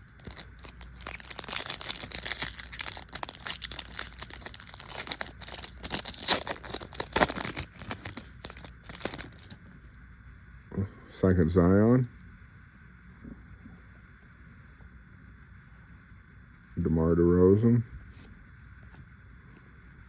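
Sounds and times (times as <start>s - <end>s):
cards being handled: 0.0s - 9.6s
plastic wrapper tearing and crinkling: 0.0s - 9.6s.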